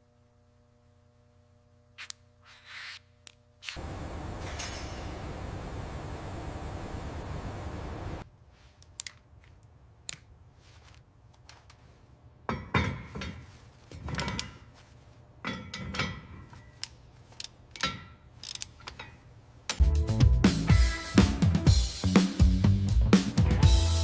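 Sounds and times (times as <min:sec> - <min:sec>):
hand tools clicking on metal: 0:08.8 - 0:10.3, 0:15.4 - 0:19.8
ringing metal clanks: 0:15.4 - 0:16.8.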